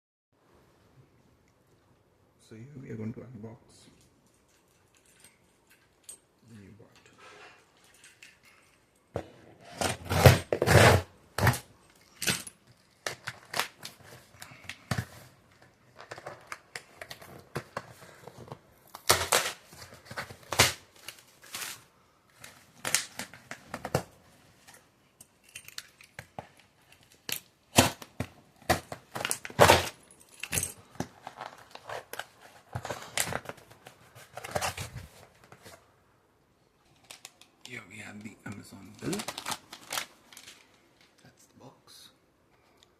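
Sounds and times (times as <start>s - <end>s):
packaging ripping and crinkling: 9.7s - 24.1s, 25.7s - 35.4s, 38.5s - 40.8s.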